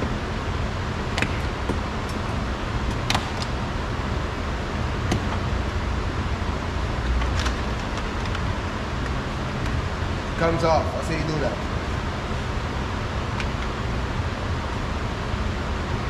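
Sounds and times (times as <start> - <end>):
low background rumble: 0.0 - 16.0.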